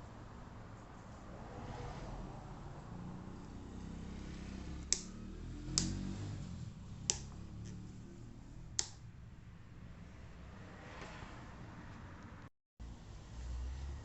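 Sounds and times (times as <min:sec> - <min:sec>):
sharp clicks: 0:04.9 - 0:05.1, 0:07.1 - 0:07.4, 0:08.7 - 0:09.0.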